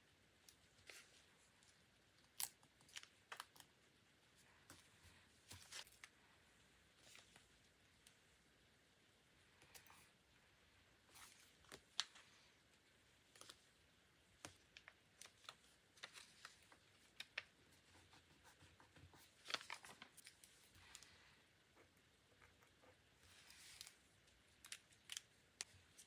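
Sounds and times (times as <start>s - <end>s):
paper rustling: 14.4s - 21.1s.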